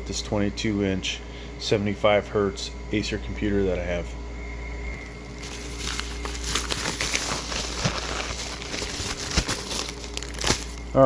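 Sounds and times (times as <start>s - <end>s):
low steady hum: 0.0s - 11.0s
packaging crinkling: 5.0s - 11.0s.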